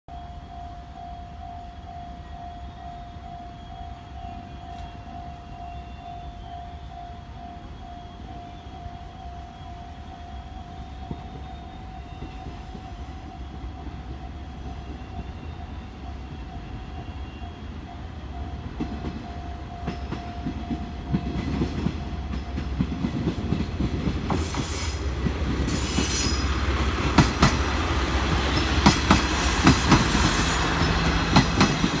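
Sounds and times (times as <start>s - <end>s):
diesel train rumbling: 0.2s - 32.0s
wheels clicking over rail joints: 18.8s - 32.0s.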